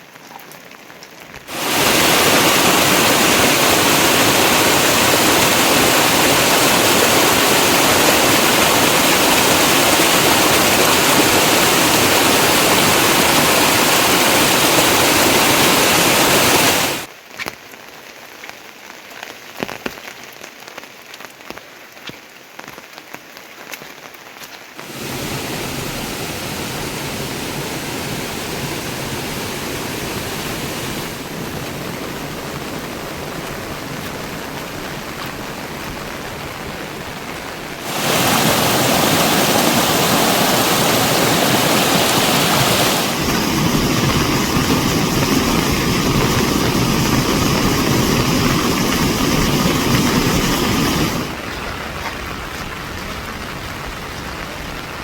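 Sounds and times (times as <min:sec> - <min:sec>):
raindrops ticking on surface: 0:00.0 - 0:14.3, 0:17.0 - 0:25.0, 0:31.2 - 0:39.3, 0:43.2 - 0:55.0
heavy rain downpour: 0:00.0 - 0:55.0.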